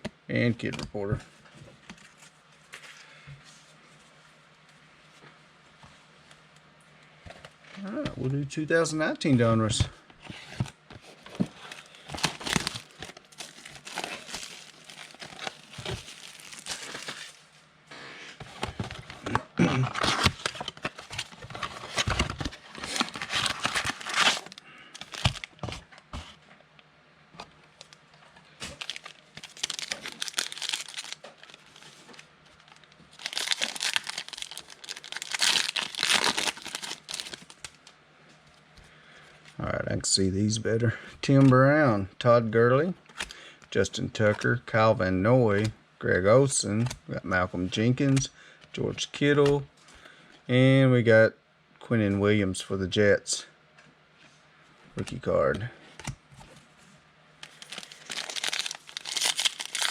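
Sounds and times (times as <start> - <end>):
wrapper crinkling and tearing: 11.7 - 17.4, 19.8 - 25.6, 28.6 - 37.8, 57.4 - 59.9.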